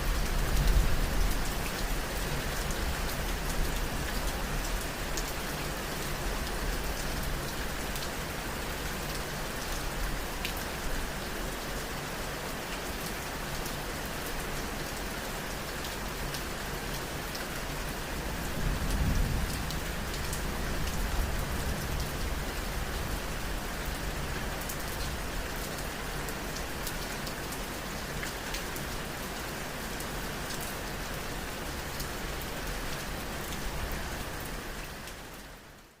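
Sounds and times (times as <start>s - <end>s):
rain on a hard surface: 0.0s - 36.0s.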